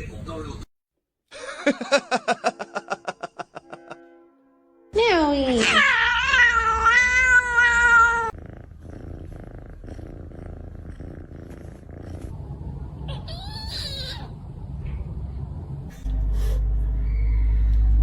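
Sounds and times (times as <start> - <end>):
kitten yowling: 5.6 - 8.3, 13.1 - 14.4
low pulsing rumble: 11.6 - 13.7, 14.3 - 18.0.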